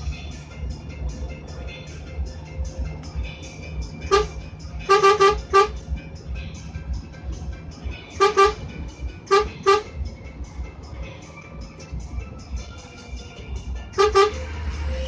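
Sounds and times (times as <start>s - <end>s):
low engine rumble: 0.0s - 15.0s
vehicle horn toots: 4.0s - 5.8s, 8.1s - 8.7s, 9.3s - 9.9s, 14.0s - 14.5s.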